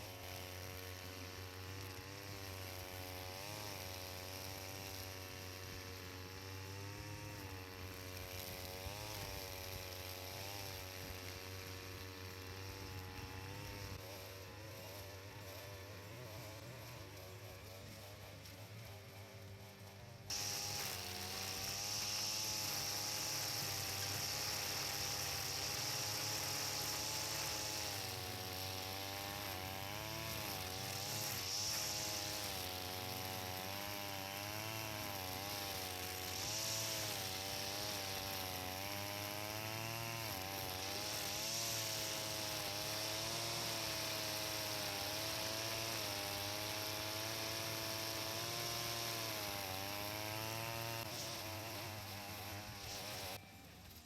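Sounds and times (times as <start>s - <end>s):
brush cutter cutting grass: 0.0s - 54.0s.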